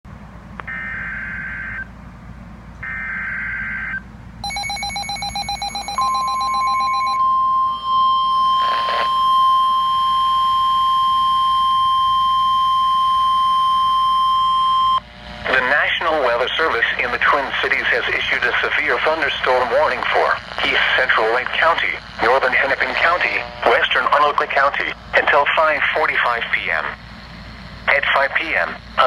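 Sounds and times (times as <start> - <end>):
steady warning alarm tone: 2.8 - 18.6
rapid beeping: 4.4 - 9.9.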